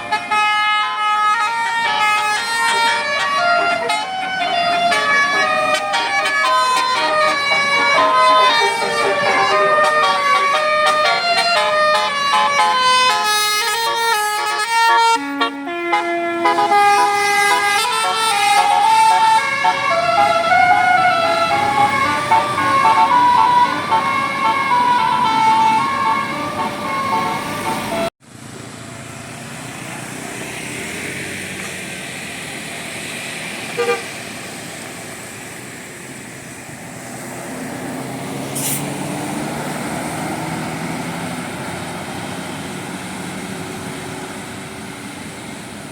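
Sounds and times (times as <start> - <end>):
musical air horn melody: 0.0 - 28.1, 33.8 - 34.1
vehicle engine and road noise: 0.0 - 45.9.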